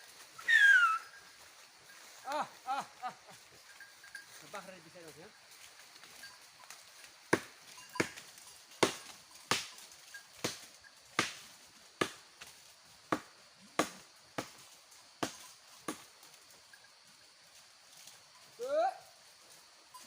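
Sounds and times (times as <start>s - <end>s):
blade chopping branches: 7.3s - 12.5s, 13.1s - 16.1s.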